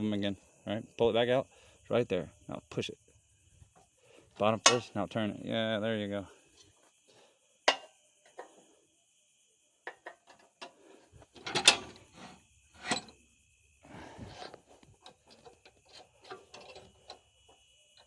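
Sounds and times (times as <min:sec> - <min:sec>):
metal clicks and clanks: 0:04.6 - 0:04.9, 0:11.4 - 0:12.2, 0:14.4 - 0:17.2.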